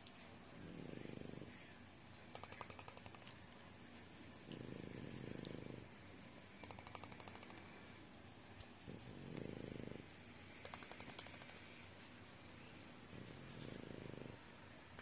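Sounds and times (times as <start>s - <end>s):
dog snoring: 0.6s - 1.6s, 4.4s - 5.9s, 8.8s - 11.6s, 12.8s - 14.4s.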